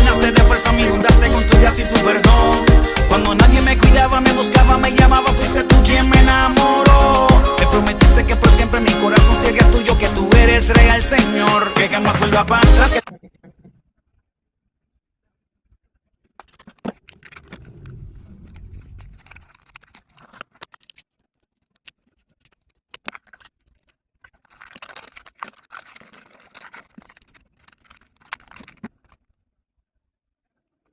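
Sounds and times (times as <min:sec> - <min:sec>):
packaging rustling: 0:16.2 - 0:17.9, 0:18.5 - 0:29.4.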